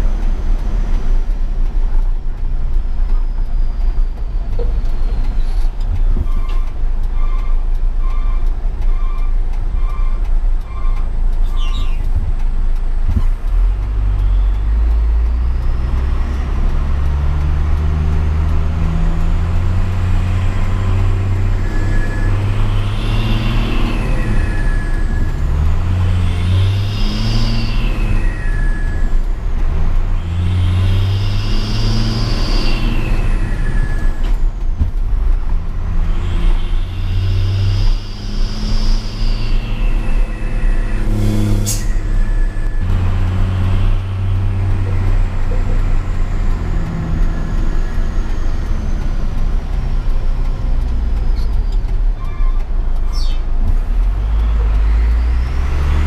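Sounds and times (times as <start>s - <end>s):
truck diesel engine revving: 0.0s - 56.0s
high engine whine: 12.0s - 56.0s.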